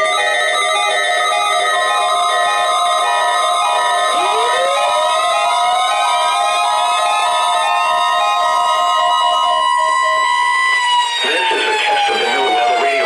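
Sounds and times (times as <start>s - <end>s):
pulsed beeps: 0.0s - 9.6s
siren-like tone sweeping upward: 0.0s - 13.0s
weather alert radio alarms: 0.0s - 13.0s.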